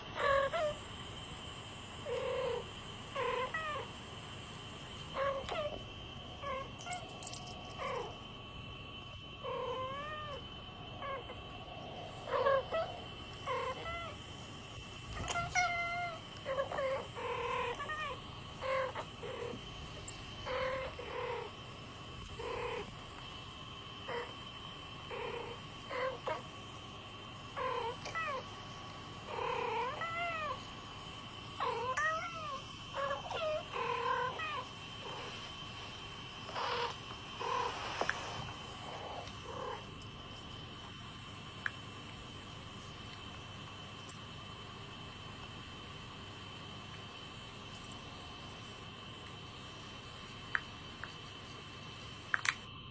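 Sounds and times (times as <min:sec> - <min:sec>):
faint high whine: 0:00.0 - 0:52.9
cats meowing: 0:05.1 - 0:05.8, 0:12.2 - 0:14.2, 0:15.1 - 0:21.5, 0:27.6 - 0:28.4, 0:31.6 - 0:35.3.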